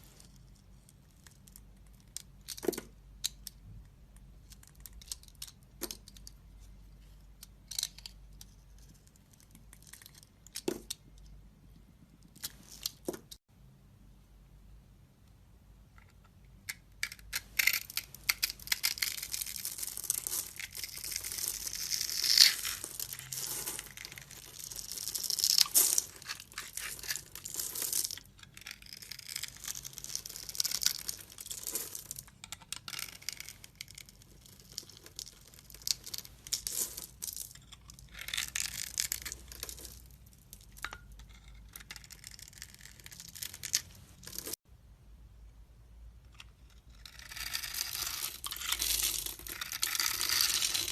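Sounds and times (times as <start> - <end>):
knife scraping soap: 41.2 - 43.0, 46.6 - 50.9.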